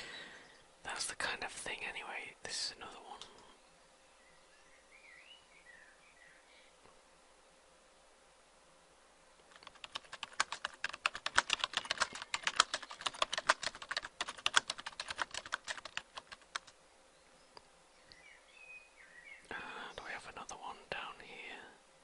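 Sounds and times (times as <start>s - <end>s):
fast keyboard typing: 9.5s - 16.7s.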